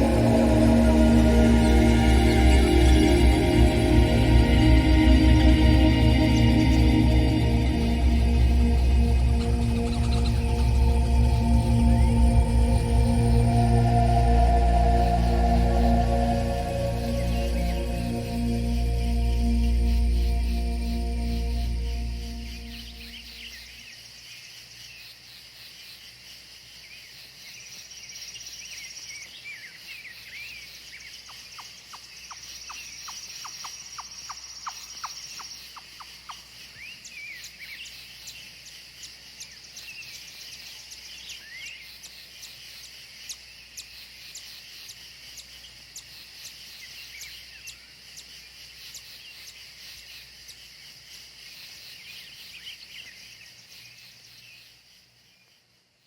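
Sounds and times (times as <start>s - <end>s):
birds chirping: 0.0s - 23.8s
high insect trill: 0.0s - 24.7s
insects chorus: 0.0s - 56.0s.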